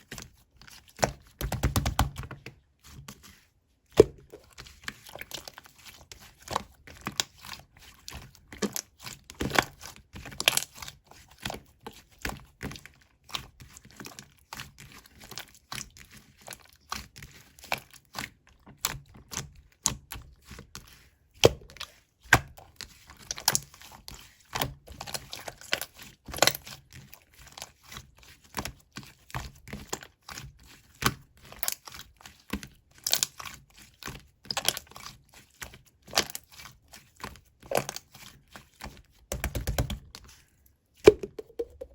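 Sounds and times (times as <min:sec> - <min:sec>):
slime clicking and popping: 0:41.1 - 0:41.9.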